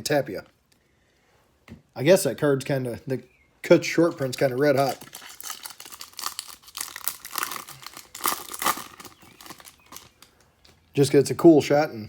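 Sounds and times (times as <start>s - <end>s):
foil wrapper crinkling: 4.0s - 10.8s.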